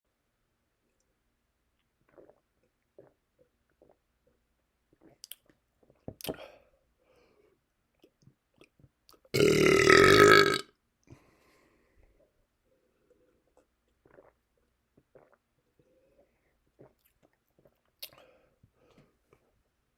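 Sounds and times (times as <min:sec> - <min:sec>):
long loud burp: 0:09.4 - 0:10.7.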